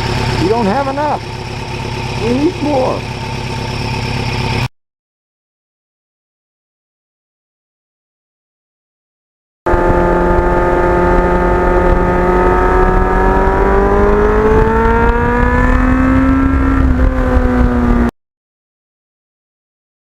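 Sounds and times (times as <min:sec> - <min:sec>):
motorcycle engine accelerating: 0:00.0 - 0:04.7, 0:09.7 - 0:18.1
heavy low rumble: 0:09.7 - 0:18.1.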